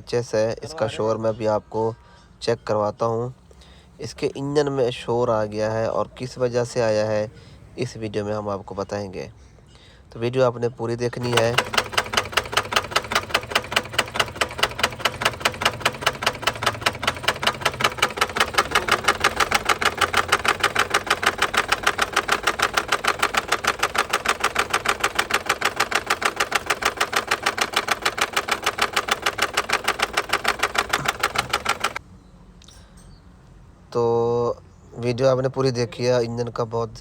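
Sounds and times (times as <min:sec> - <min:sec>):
engine idling with knocking clatter: 0:11.2 - 0:32.0.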